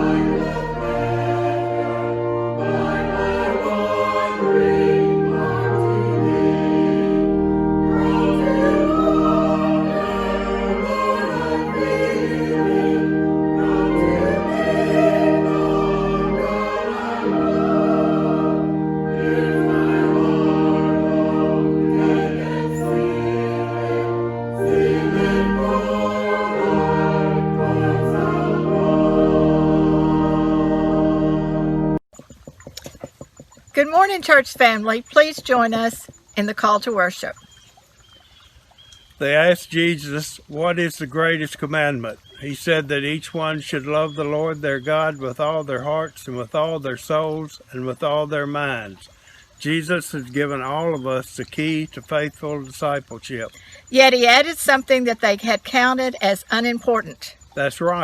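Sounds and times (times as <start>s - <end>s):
choir singing a hymn: 0.0s - 32.0s
sustained organ chords: 0.0s - 32.0s, 49.6s - 54.1s.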